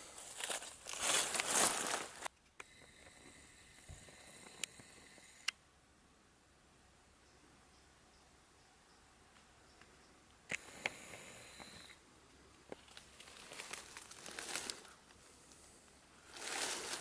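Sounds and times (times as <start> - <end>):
undergrowth rustling and crackling: 0.0 - 2.3, 12.7 - 17.0.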